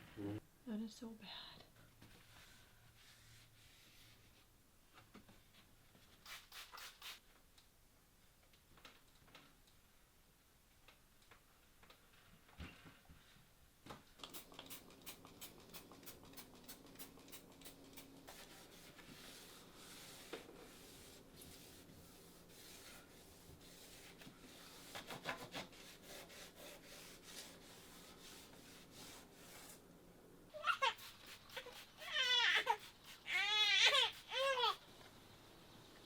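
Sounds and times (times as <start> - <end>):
scrubbing strokes on a surface: 2.3 - 4.4, 18.3 - 29.8, 30.6 - 34.7.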